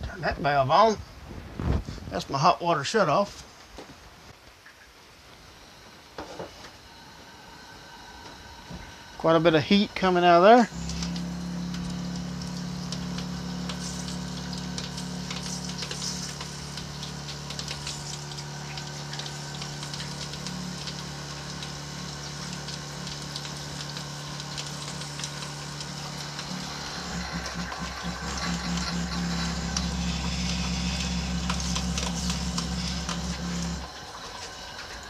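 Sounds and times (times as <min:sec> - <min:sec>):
electric water pump humming: 0:05.4 - 0:35.0
water running from faucet: 0:08.9 - 0:35.0.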